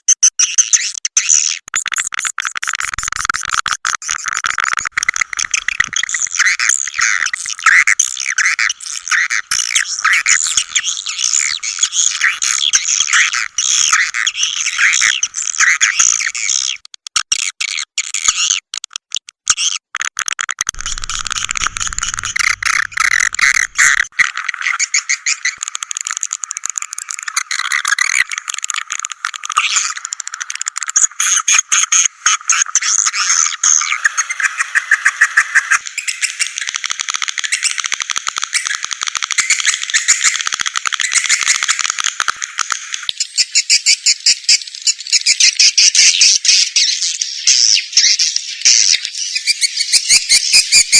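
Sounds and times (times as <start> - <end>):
swiftlets twittering: 20.8 - 24.1.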